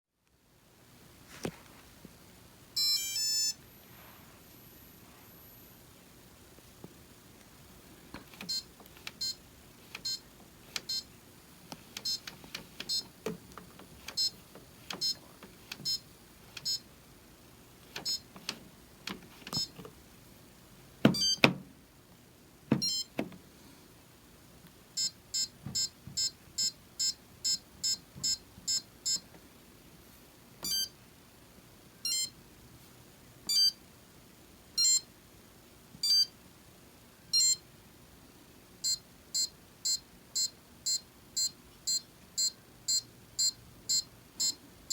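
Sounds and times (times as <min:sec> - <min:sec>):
control panel short high beeps: 0:02.8 - 0:03.6, 0:21.2 - 0:21.5, 0:30.6 - 0:30.9.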